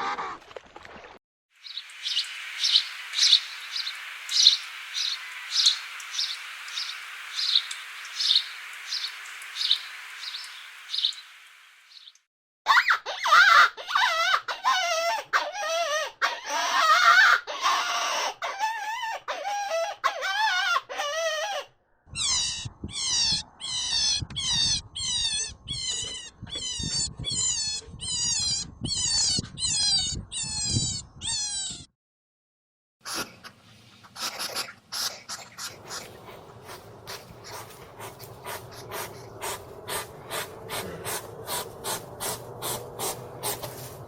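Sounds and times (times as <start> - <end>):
animal whining cries: 12.7 - 31.9.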